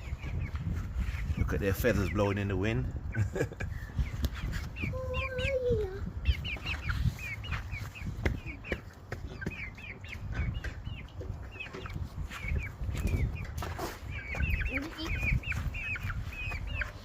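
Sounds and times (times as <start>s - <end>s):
chicks peeping: 0.0s - 17.0s
wind rumble on microphone: 0.0s - 17.0s.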